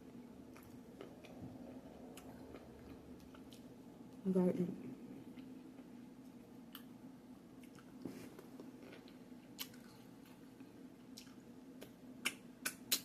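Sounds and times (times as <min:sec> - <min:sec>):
person chewing crunchy food: 0:00.4 - 0:03.8, 0:07.6 - 0:13.0.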